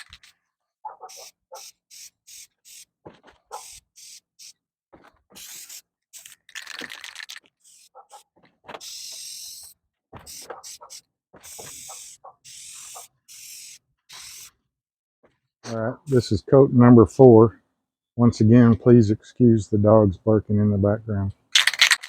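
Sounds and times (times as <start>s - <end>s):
dog barking: 0.8s - 1.7s, 3.5s - 3.8s, 7.9s - 8.3s, 10.4s - 11.0s, 11.8s - 13.1s
aerosol spray can hissing: 1.1s - 2.9s, 3.6s - 4.6s, 5.4s - 6.4s, 7.6s - 7.9s, 8.8s - 14.5s.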